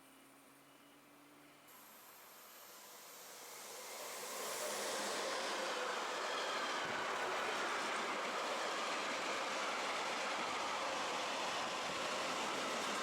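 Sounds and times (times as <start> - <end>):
train wheels on rails: 3.0 - 13.0.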